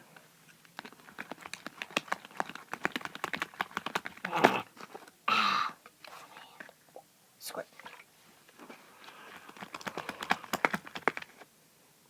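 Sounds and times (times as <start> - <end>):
utensil stirring slime in bowl: 0.6 - 5.0, 9.1 - 11.4.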